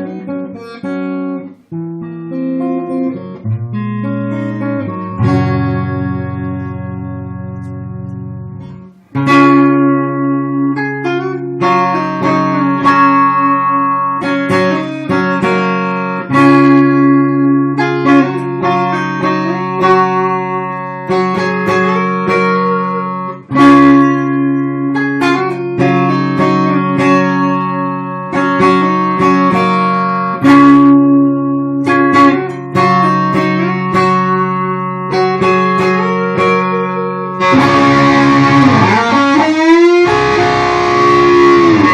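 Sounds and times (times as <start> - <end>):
plucked guitar notes and chords: 0.0 - 41.9.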